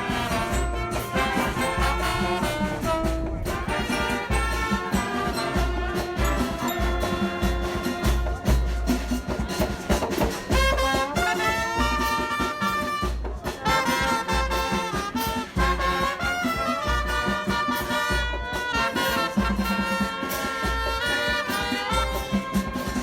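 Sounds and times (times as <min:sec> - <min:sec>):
upbeat brass-led music: 0:00.0 - 0:23.0.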